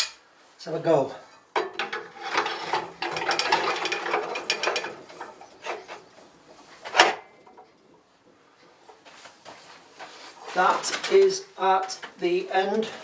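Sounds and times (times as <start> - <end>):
metal scraping and clicking: 1.6 - 7.8.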